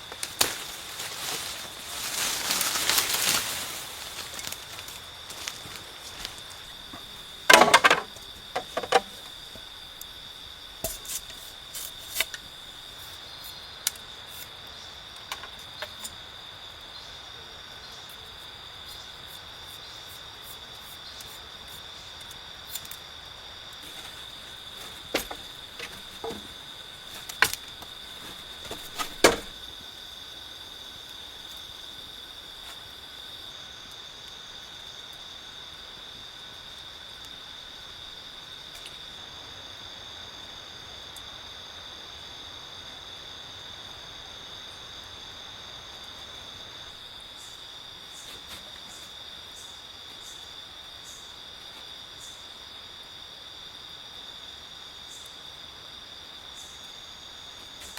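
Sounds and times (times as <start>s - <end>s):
insects droning: 0.0s - 57.9s
sharp knocks and clicks: 6.9s - 9.6s, 24.8s - 29.6s.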